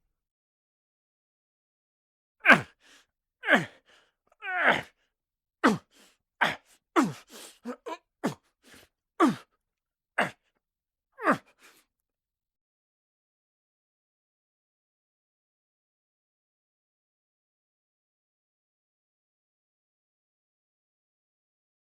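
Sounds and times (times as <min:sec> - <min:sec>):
person grunting with effort: 0:02.4 - 0:02.8, 0:03.4 - 0:03.8, 0:04.4 - 0:05.0, 0:05.6 - 0:08.4, 0:09.2 - 0:09.4, 0:10.2 - 0:10.4, 0:11.2 - 0:11.5.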